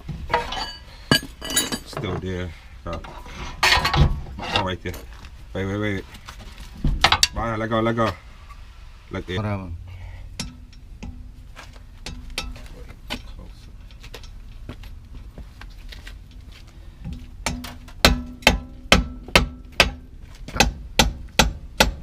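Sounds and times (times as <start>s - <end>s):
light metallic taps and clinks: 10.4s - 15.3s.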